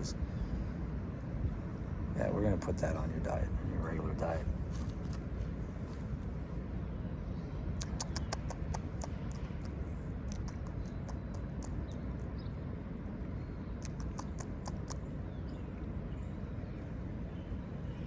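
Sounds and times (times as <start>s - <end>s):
low background rumble: 0.0s - 18.0s
squirrel cracking a nut: 6.2s - 18.0s.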